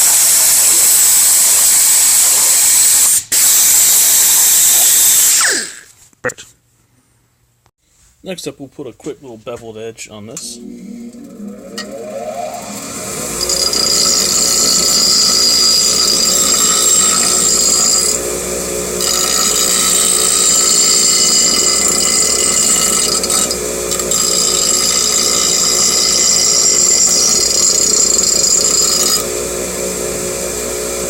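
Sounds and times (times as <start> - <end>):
power grinder grinding metal: 10.4 - 30.4.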